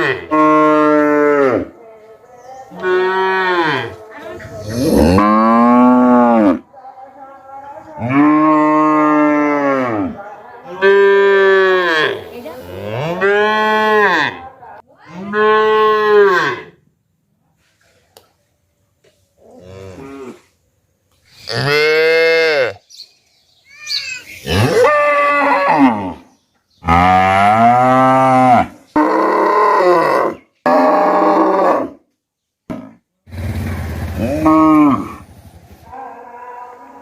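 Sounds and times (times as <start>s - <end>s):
cattle mooing: 4.6s - 6.6s, 34.2s - 35.2s.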